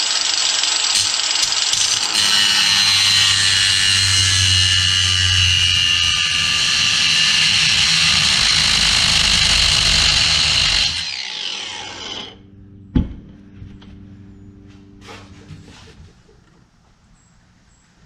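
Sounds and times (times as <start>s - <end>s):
power tool cutting steel pipe: 0.0s - 12.4s
faint low hum: 12.3s - 18.0s.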